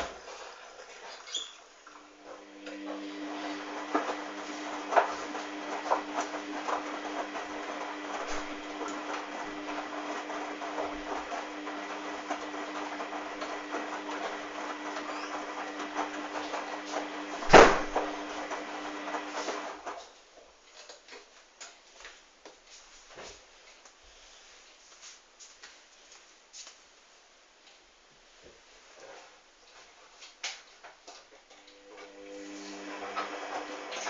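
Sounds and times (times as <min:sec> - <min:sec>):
washing machine motor hum: 0:00.0 - 0:20.0, 0:31.6 - 0:34.0.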